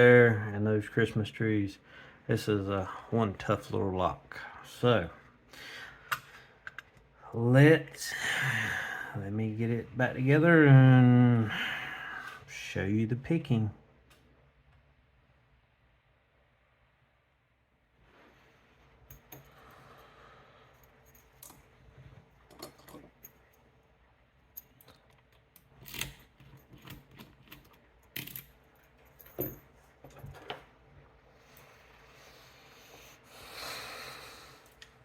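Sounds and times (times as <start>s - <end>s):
lock picks clicking in a lock: 24.6s - 28.5s.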